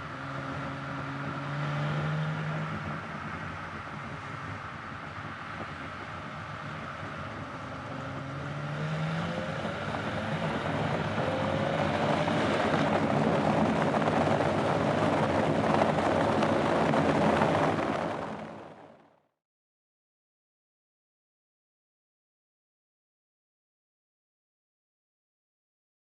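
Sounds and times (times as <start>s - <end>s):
car engine accelerating: 0.0s - 19.0s.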